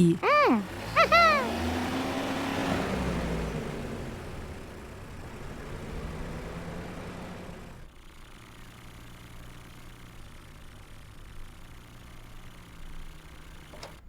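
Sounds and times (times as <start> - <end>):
cartoon vehicle engine: 0.0 - 8.6.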